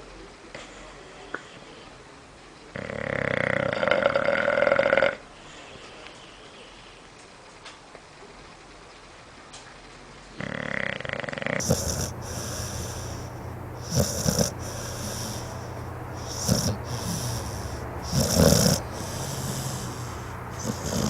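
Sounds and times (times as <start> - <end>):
dog snoring: 2.8 - 5.2, 10.4 - 21.0
steady low hum: 11.6 - 21.0.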